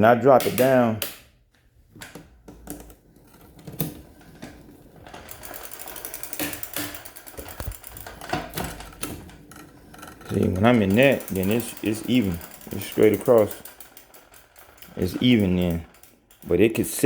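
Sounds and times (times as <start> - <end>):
clicks and knocks: 1.9 - 17.0
bike chain ticking: 5.1 - 17.0.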